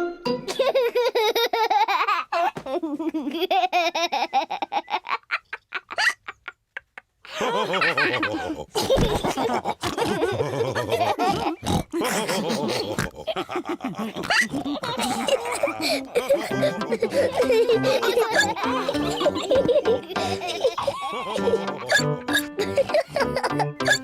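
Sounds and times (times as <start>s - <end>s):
cartoon pigs laughing and snorting: 0.5s - 24.0s.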